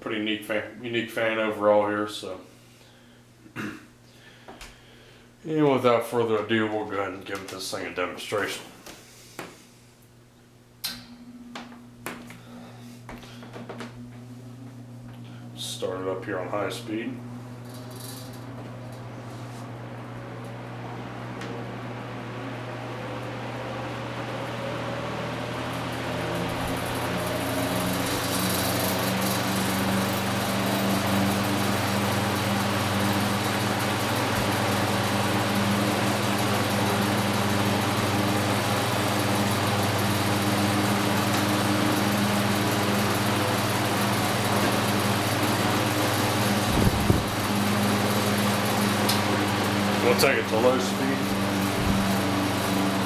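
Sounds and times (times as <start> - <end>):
box fan running with hum: 0.0 - 53.0
fan rattle: 10.8 - 53.0.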